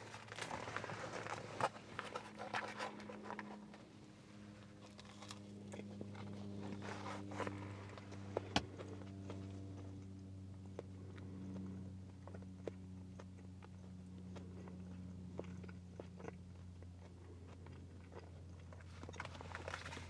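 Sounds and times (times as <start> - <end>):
person chewing food: 0.0 - 20.0
small clicks and crackling: 0.0 - 20.0
steady low hum: 0.0 - 20.0.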